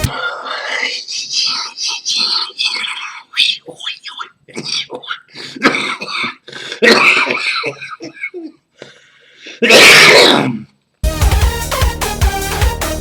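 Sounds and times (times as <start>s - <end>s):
man coughing and hacking: 3.8s - 8.7s, 9.6s - 10.4s
electronic music with heavy beat: 11.0s - 13.0s.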